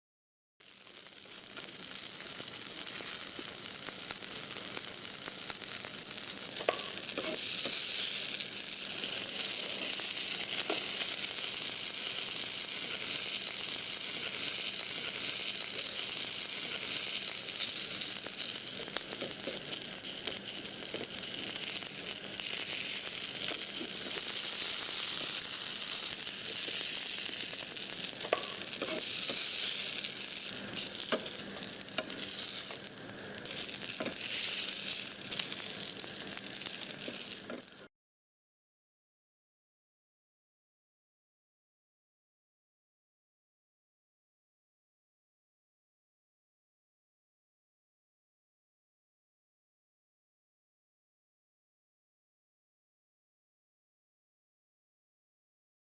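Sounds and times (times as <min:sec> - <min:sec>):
food sizzling in a frying pan: 0:00.6 - 0:37.9.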